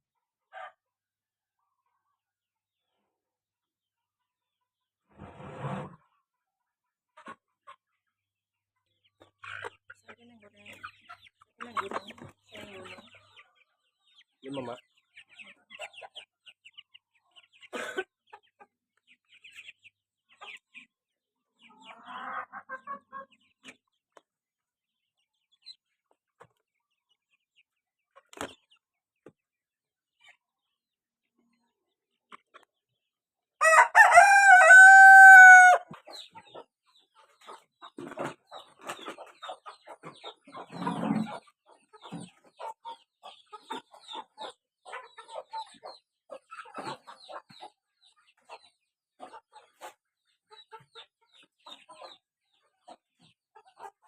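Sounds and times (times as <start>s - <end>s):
chickens clucking: 0.1s - 3.2s, 3.8s - 54.0s
rooster crowing: 33.6s - 35.9s.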